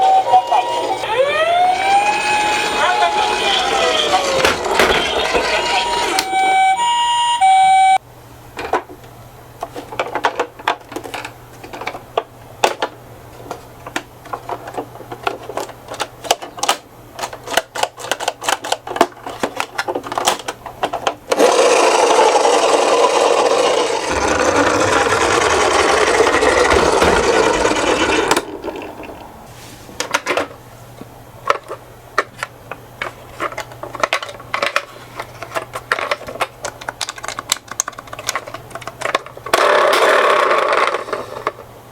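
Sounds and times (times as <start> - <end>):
toy car wheels rolling: 2.0 - 6.2, 17.2 - 29.3, 37.0 - 41.6
toy cars clicking when handled: 13.8 - 26.6, 31.5 - 41.6.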